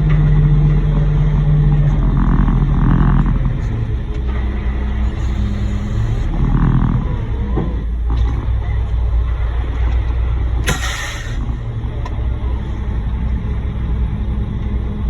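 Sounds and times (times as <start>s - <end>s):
diesel truck engine idling: 0.0s - 15.0s
air hiss: 5.1s - 6.3s, 10.6s - 11.6s.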